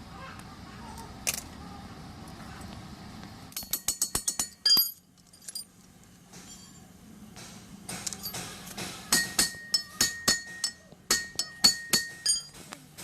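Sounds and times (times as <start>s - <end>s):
low steady background hum: 0.0s - 13.0s
metal tools clinking: 3.5s - 6.9s, 8.0s - 12.6s.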